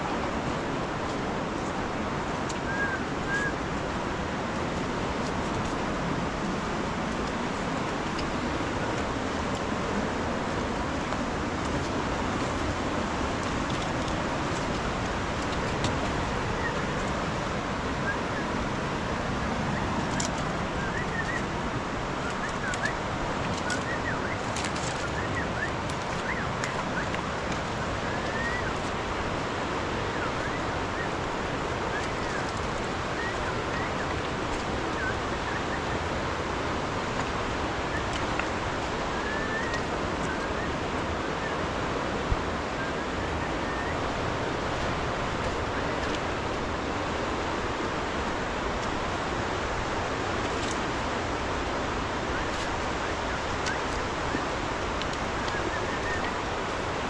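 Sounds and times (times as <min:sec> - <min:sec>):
floodwater rushing: 0:00.0 - 0:57.0.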